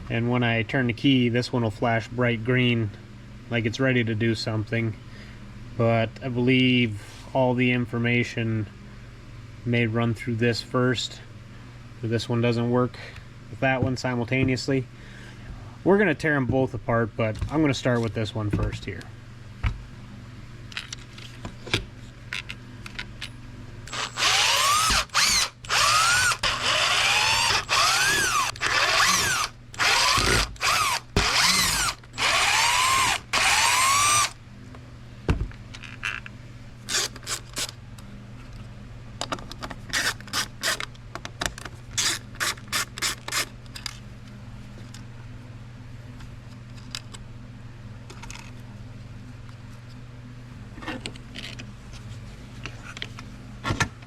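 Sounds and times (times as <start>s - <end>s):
cordless drill spinning: 23.9s - 34.4s, 36.9s - 37.6s.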